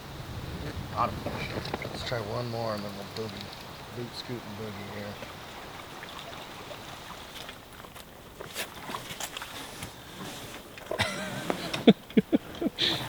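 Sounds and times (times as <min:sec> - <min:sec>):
river water running: 0:00.0 - 0:13.0
light clicks and knocks: 0:01.4 - 0:04.4.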